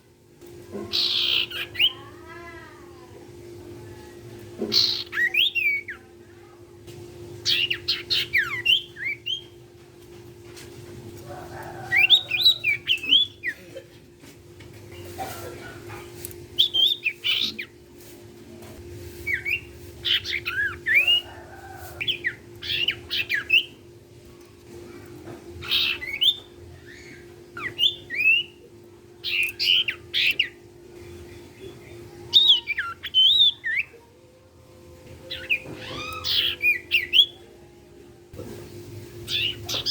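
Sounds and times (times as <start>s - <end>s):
steady low hum: 0.0s - 39.9s
songbird whistling chattering notes: 0.9s - 2.0s, 4.7s - 6.0s, 7.4s - 9.6s, 22.0s - 23.8s, 25.6s - 28.6s, 29.2s - 30.6s, 31.4s - 34.0s, 35.3s - 37.4s.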